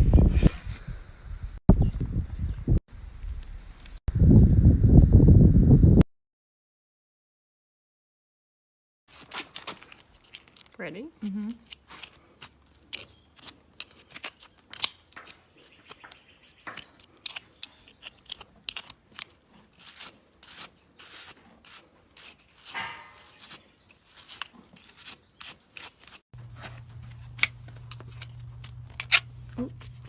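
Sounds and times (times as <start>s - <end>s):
brush scraping and rubbing: 15.4s - 30.0s.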